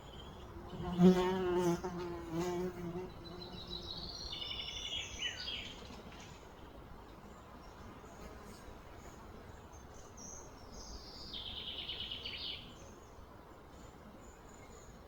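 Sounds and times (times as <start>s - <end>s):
outdoor background noise: 0.0s - 15.0s
songbird chirping and trilling: 3.0s - 5.8s.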